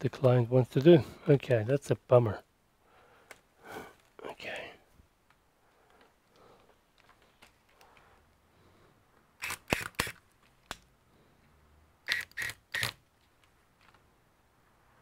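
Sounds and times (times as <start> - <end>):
laptop clicks and snaps: 9.4 - 10.9.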